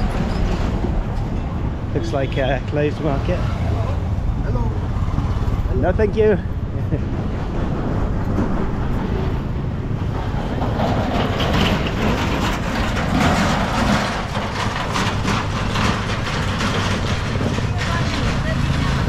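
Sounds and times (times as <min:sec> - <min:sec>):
low city street rumble: 0:00.0 - 0:19.0
scattered clatter: 0:09.9 - 0:19.0.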